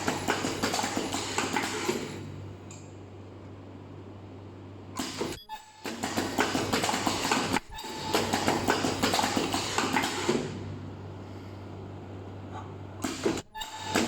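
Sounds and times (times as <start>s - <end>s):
machine clattering and clicking: 0.0s - 2.2s, 5.0s - 10.6s
steady hum with hiss: 9.5s - 13.4s.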